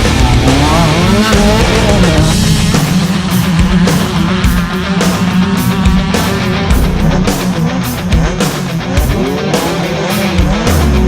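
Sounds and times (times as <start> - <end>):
heavy rock music: 0.0 - 11.0
race car engine revving: 0.0 - 11.0.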